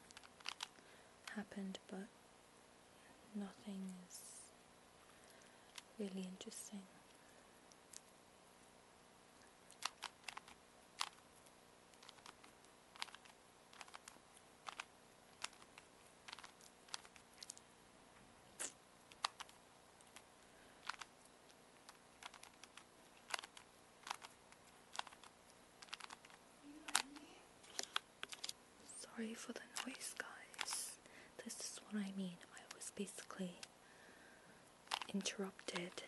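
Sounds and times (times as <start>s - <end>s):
plastic cube clicks and clacks: 9.7s - 11.2s, 12.0s - 17.6s, 20.8s - 21.1s, 21.9s - 27.1s, 34.9s - 36.0s.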